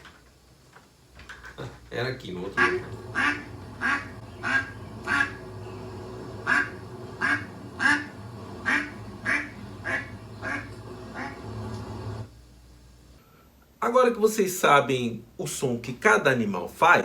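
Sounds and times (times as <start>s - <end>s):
duck quacking: 2.6s - 5.4s, 6.5s - 8.1s, 8.7s - 11.4s.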